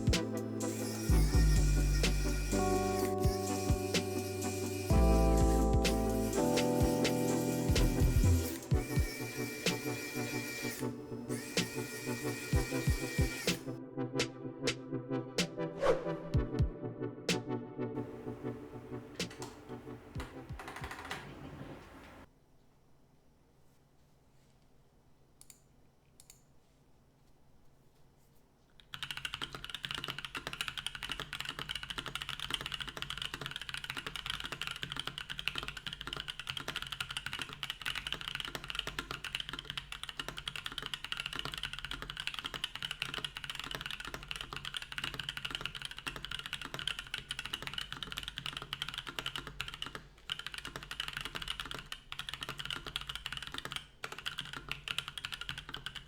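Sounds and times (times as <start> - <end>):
mechanical keyboard typing: 19.2 - 22.2, 28.8 - 56.0.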